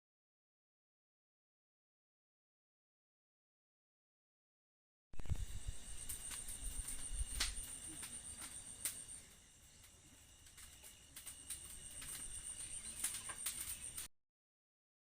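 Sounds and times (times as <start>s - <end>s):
wind rumble on microphone: 5.2s - 7.7s
insects chirping: 5.2s - 14.1s.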